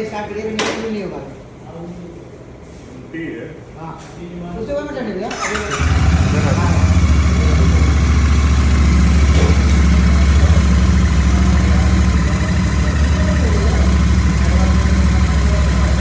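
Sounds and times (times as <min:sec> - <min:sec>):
motorcycle engine idling: 0:05.3 - 0:16.0.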